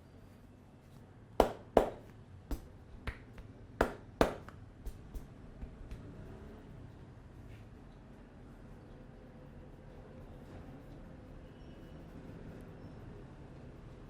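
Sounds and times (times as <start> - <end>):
sharp hand snaps: 1.4 - 5.0.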